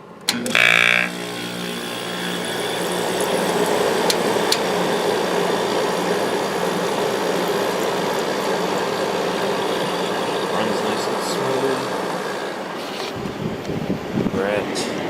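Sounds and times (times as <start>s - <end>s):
air conditioner running: 0.0s - 15.0s.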